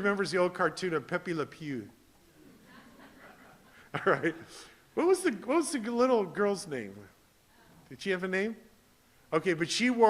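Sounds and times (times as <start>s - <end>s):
preacher speaking: 0.0s - 2.0s, 4.0s - 7.2s, 7.9s - 8.7s, 9.3s - 10.0s.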